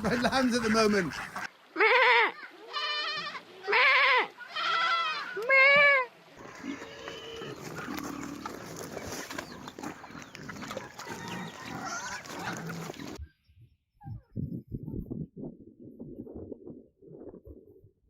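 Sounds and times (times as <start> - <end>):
farm animals calling: 0.0 - 13.2.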